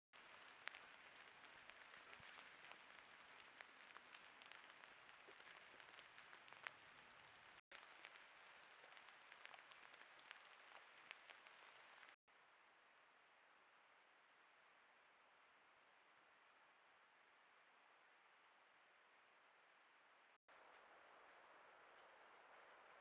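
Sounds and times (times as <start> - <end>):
small ticks and crackles: 0.1 - 12.2
faint steady hiss: 0.2 - 23.0.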